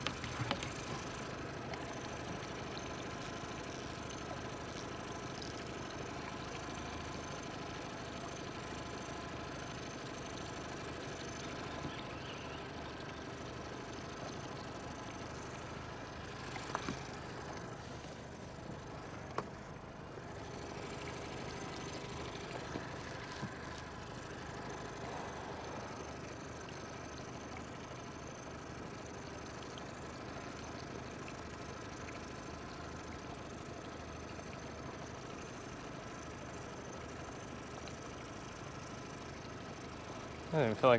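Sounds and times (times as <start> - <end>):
sharp clicks and knocks: 0.0 - 1.1
engine idling: 0.0 - 40.9.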